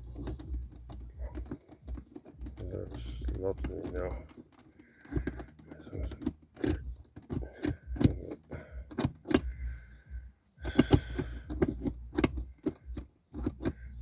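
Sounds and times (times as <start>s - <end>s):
plastic and metal clicks of shifter: 0.0s - 14.0s.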